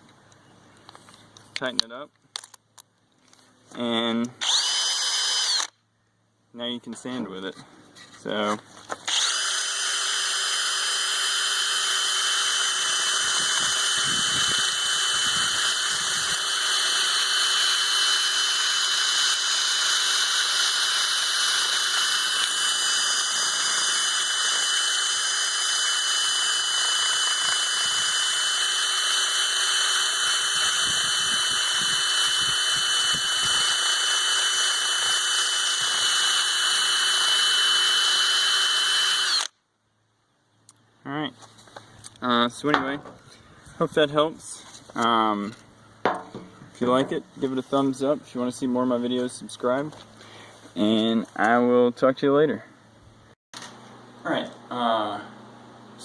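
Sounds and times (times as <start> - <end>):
power drill whining: 4.4 - 5.8, 9.0 - 39.6.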